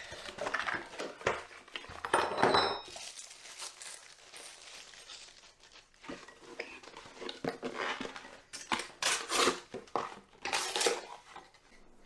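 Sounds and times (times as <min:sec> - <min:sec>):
small hard objects clinking: 0:00.1 - 0:07.2.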